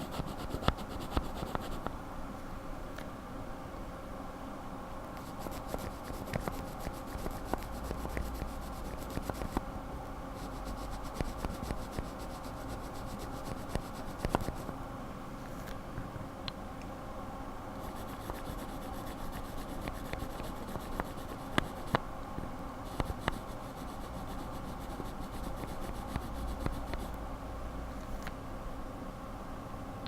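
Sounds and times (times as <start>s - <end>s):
keyboard switches scratchy rubbing: 5.2s - 9.6s.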